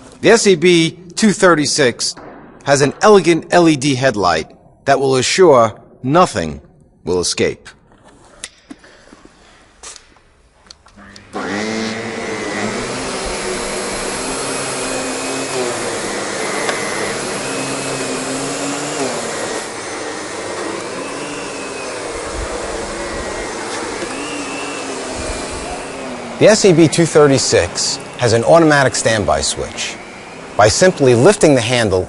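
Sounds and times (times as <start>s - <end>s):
vacuum cleaner running: 11.0s - 32.0s.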